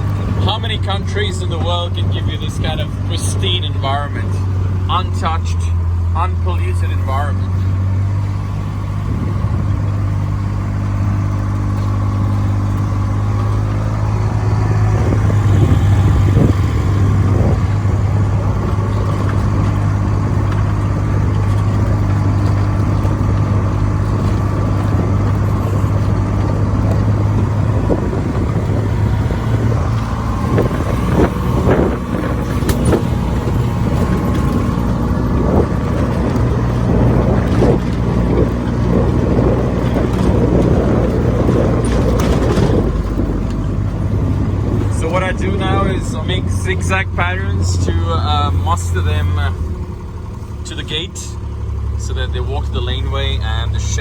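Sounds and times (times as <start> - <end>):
farm vehicle engine running: 0.0 - 54.0
knocks and rattles: 7.5 - 50.7.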